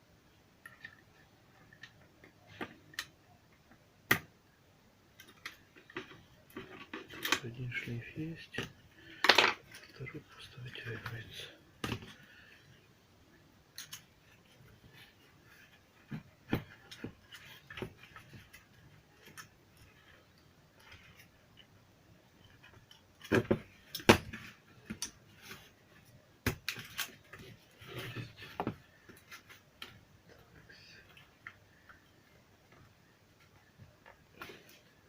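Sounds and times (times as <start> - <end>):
plastic parts clicking and knocking: 5.1 - 7.6, 8.5 - 10.0, 11.0 - 12.3, 13.7 - 21.7, 22.4 - 30.1.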